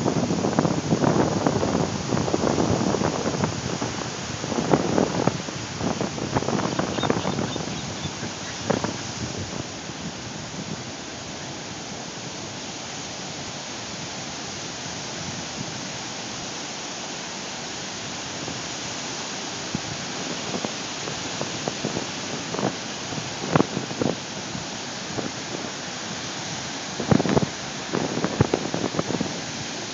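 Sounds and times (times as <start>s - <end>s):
wind buffeting microphone: 0.0s - 12.0s, 26.9s - 29.9s
ocean surf washing: 0.0s - 29.9s.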